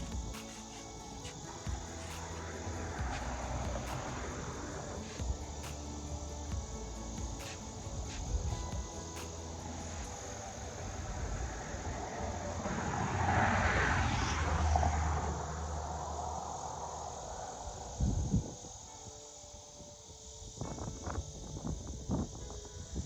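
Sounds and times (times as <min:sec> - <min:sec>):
insects chirring: 0:00.0 - 0:23.0
distant engine passing: 0:09.9 - 0:17.2.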